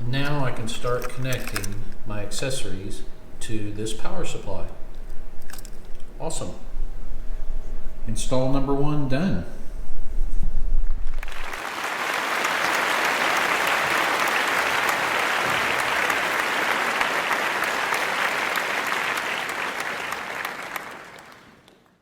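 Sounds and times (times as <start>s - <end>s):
crowd applauding: 11.2s - 22.0s.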